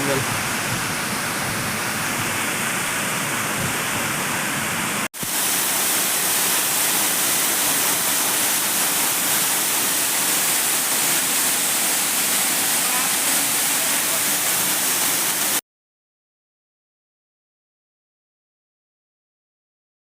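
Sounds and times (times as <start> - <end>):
waterfall rushing: 0.0 - 15.6.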